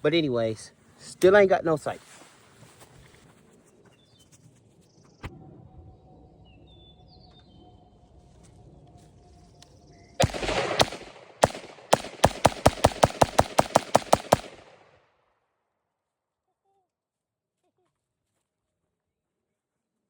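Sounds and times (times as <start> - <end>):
rifle shots: 10.2 - 14.9.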